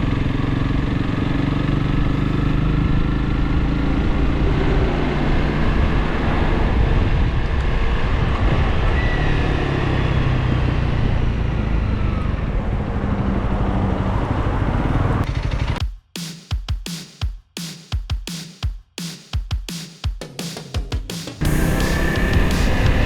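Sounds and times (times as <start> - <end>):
motorcycle engine running: 0.0 - 7.9, 13.4 - 15.9, 21.4 - 23.0
road noise: 0.0 - 15.3, 21.4 - 23.0
wind noise: 2.6 - 14.6.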